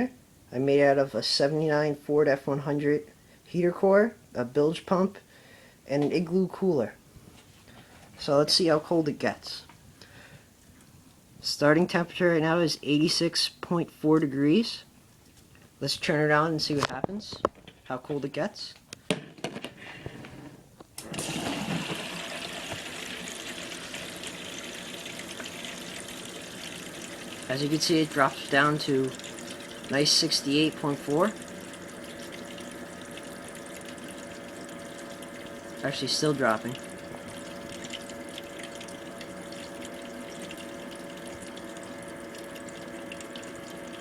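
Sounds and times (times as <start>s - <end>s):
bilge pump running: 21.0s - 44.0s
motor hum: 21.0s - 44.0s
water splashing and trickling: 21.5s - 44.0s.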